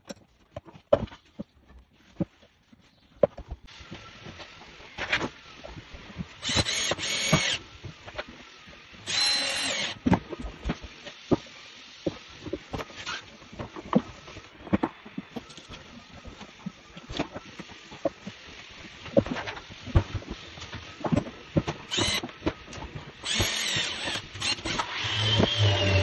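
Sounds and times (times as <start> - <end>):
handheld power tool running: 6.4 - 7.6, 9.0 - 10.0, 21.9 - 22.3, 23.2 - 26.0.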